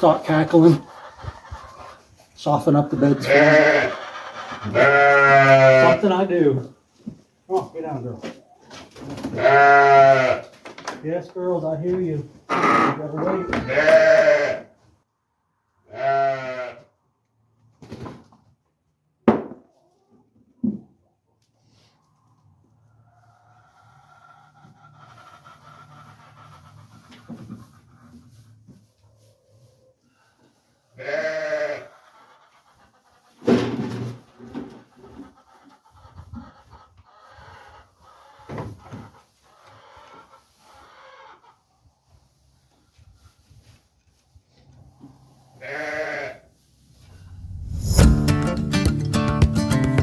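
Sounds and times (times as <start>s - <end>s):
farm animal bleating: 3.0s - 6.1s, 9.3s - 10.5s, 12.5s - 14.7s, 15.9s - 16.9s, 31.0s - 32.2s, 45.6s - 46.5s.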